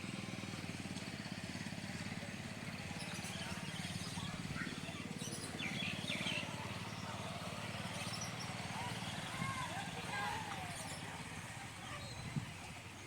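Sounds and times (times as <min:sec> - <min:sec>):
engine running: 0:00.0 - 0:13.0
bird chirps: 0:03.0 - 0:07.2.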